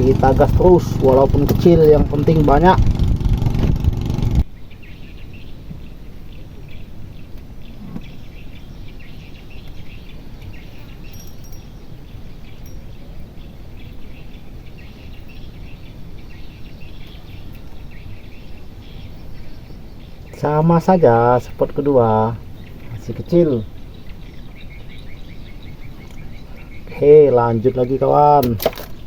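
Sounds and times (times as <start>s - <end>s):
birds chirping: 0.0s - 29.0s
steady low river noise: 0.0s - 29.0s
insects chirping: 8.9s - 29.0s.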